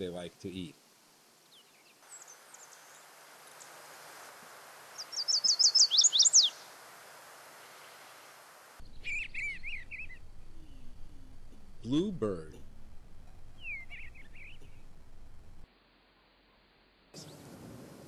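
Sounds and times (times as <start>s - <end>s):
steady outdoor hiss: 0.0s - 18.0s
bird chirping: 5.0s - 6.7s, 8.8s - 15.7s
warbler singing: 5.0s - 6.7s, 8.8s - 15.7s.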